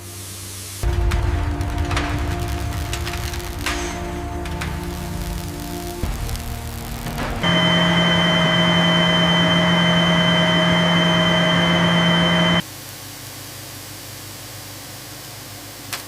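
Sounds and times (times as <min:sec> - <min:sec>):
machine hiss with whine: 0:00.0 - 0:16.0.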